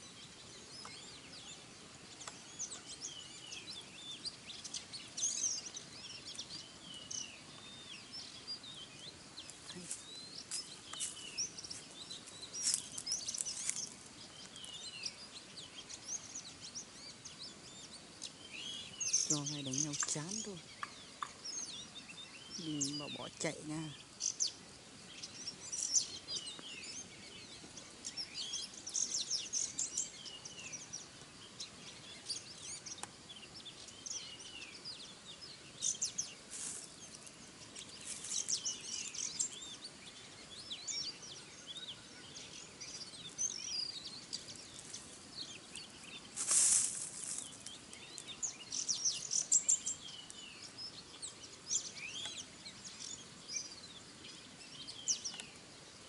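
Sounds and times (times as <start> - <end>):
small birds chirping: 0.0 - 56.0
loud rustle: 46.3 - 47.8.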